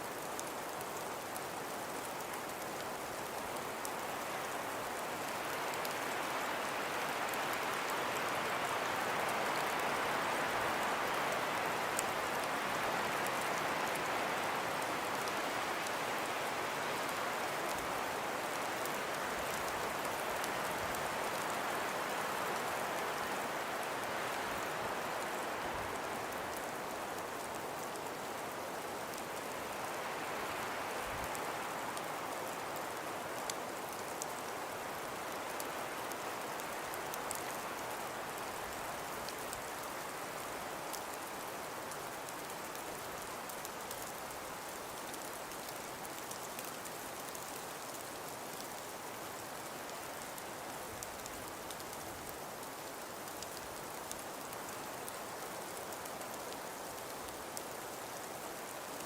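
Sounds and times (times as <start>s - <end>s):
faint ticks: 35.1s - 59.0s.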